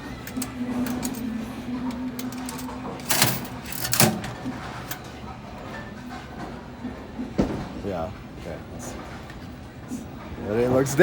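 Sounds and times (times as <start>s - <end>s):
vending machine motor hum: 0.0s - 7.3s.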